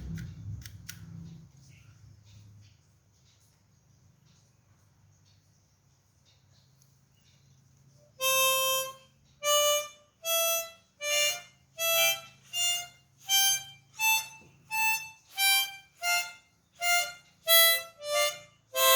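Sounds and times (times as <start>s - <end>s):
harmonica single notes: 8.2s - 18.9s.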